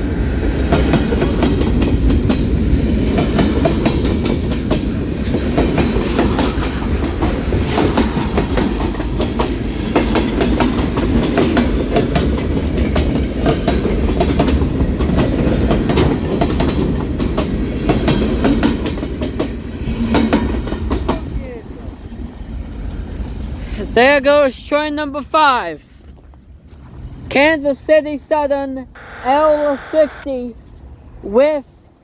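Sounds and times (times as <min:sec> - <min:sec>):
freight train rumbling past: 0:00.0 - 0:24.0.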